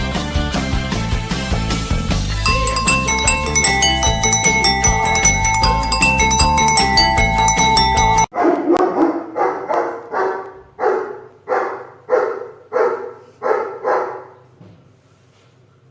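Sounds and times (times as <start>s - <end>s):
mallet percussion music: 2.5s - 8.3s
dog barking: 8.4s - 14.5s.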